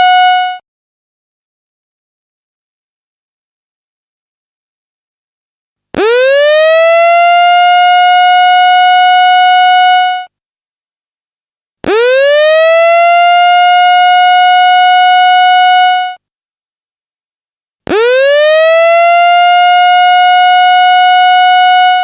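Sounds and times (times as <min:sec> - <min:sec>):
alarm siren blasts: 0:06.0 - 0:09.2, 0:11.9 - 0:15.8, 0:17.9 - 0:22.0.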